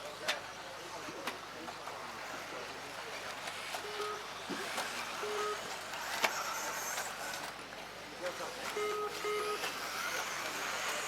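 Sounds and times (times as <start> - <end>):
rc buggies racing on dirt: 1.7 - 8.7, 9.5 - 11.0.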